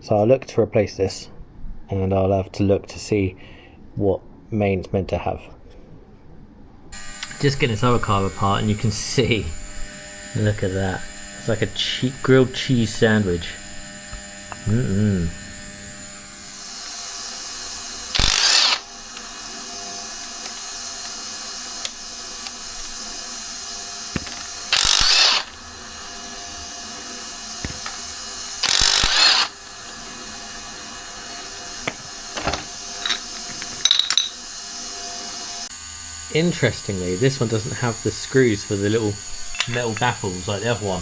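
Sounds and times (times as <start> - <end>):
loud bursts of noise: 6.9 - 20.8, 21.6 - 25.8, 27.3 - 29.7
small mechanism noises: 6.9 - 41.0
ratchet clicking: 7.0 - 41.0.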